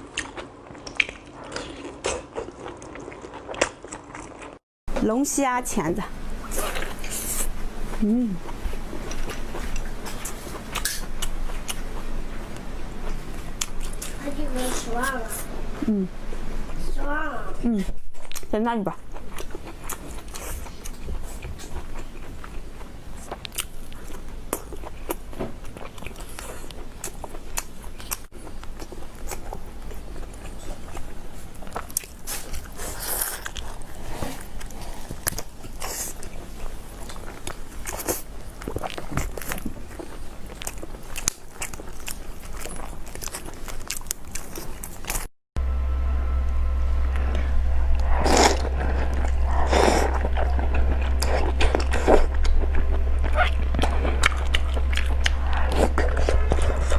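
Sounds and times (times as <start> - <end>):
crunchy chewing: 18.2 - 45.3, 47.9 - 56.9.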